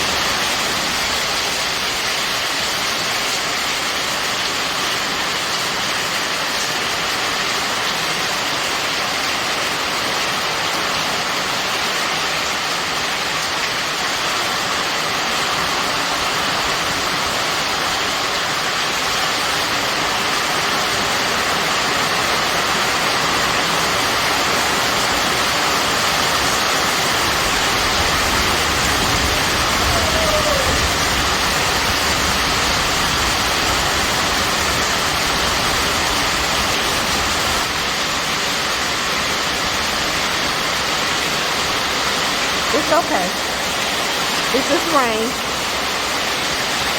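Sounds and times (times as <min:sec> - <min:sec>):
heavy rain falling: 0:00.0 - 0:46.9.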